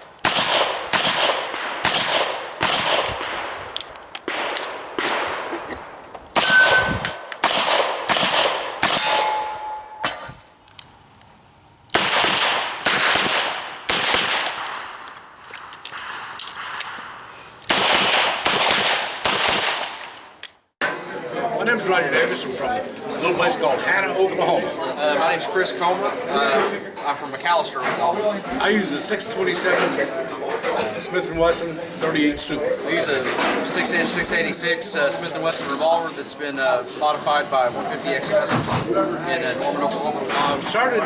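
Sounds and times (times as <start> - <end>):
bullets clanging off steel targets: 6.4 - 7.3, 8.8 - 10.4.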